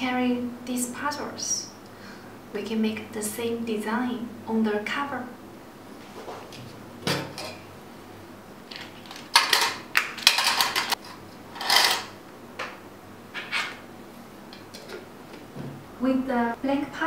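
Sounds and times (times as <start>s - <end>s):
puzzle pieces rattling: 8.7s - 11.0s.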